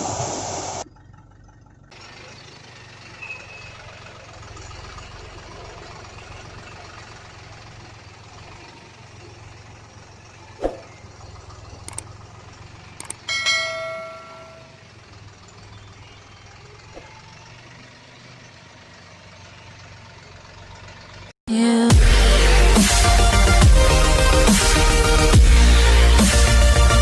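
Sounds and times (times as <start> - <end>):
heavy machinery engine humming: 0.0 - 21.3.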